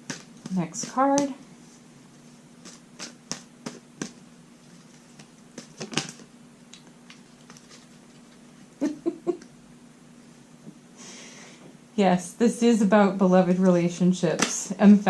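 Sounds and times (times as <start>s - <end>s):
cards being shuffled: 2.6s - 8.4s.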